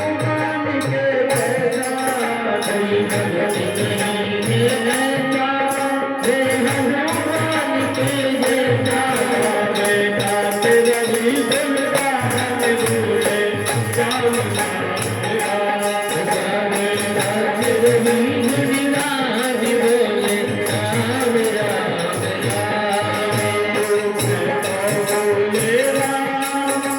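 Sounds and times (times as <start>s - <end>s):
devotional melody: 0.0s - 26.9s
jingling small cymbals: 1.3s - 26.9s
steady drum beat: 6.3s - 26.9s.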